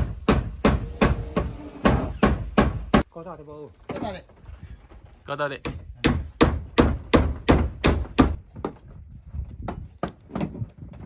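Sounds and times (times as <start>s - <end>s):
hammer blows: 0.0s - 3.0s.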